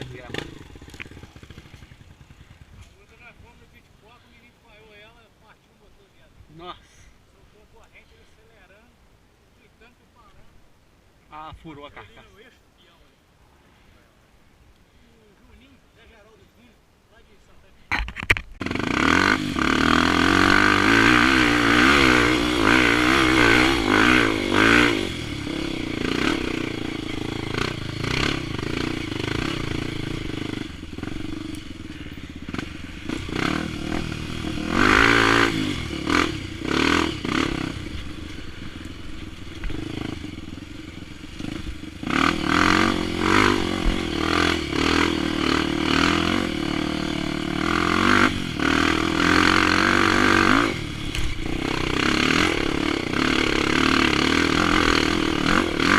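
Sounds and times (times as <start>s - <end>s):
motorcycle engine revving: 0.0s - 4.2s, 18.5s - 55.9s.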